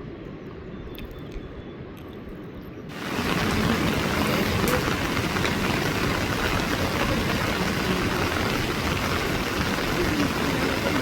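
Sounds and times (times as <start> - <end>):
heavy rain falling: 2.9 - 11.0.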